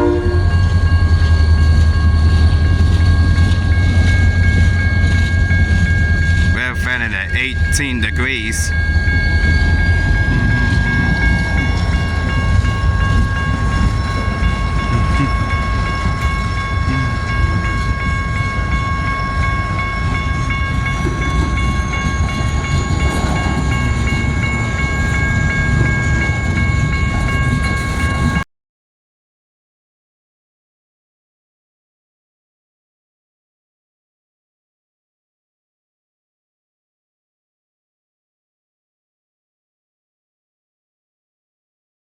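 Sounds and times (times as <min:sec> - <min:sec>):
freight train wheels rumbling: 0:00.0 - 0:28.4
high squealing tones: 0:08.7 - 0:17.9.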